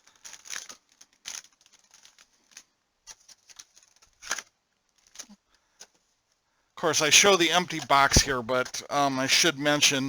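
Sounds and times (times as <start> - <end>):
cellophane crinkling: 0.0 - 5.4.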